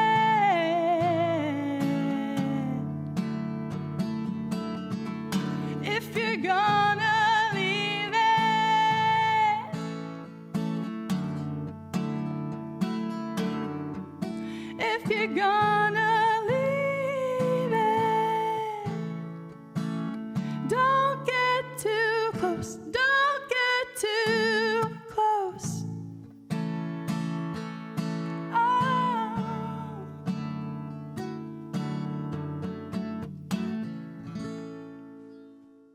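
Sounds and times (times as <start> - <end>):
person singing with vibrato: 0.0 - 2.9, 5.7 - 9.9, 14.5 - 19.1, 20.4 - 25.9, 28.4 - 30.2
acoustic guitar strumming: 0.0 - 35.9.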